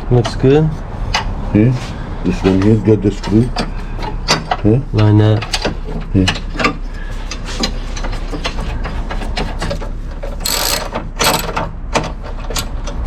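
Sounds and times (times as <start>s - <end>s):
ratchet wrench clicking: 10.4s - 11.6s.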